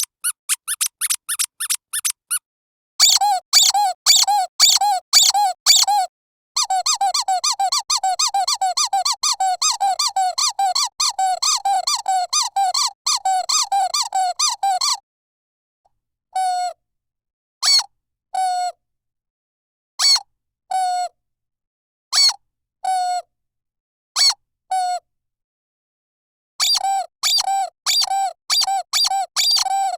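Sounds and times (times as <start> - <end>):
squeaky dog toy squeaking: 0.0 - 15.0, 26.6 - 29.9.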